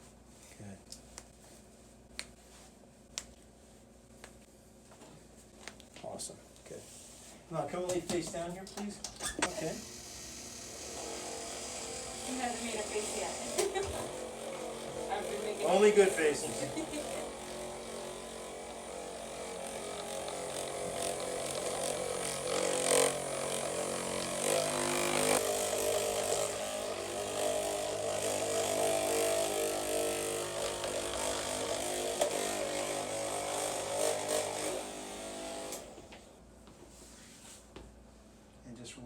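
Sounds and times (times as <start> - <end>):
small electric motor buzzing: 9.4 - 36.3.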